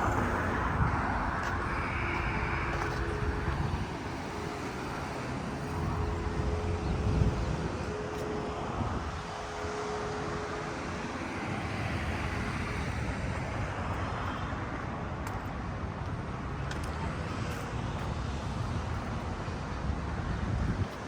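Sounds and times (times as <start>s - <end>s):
cars driving past: 0.0s - 15.1s.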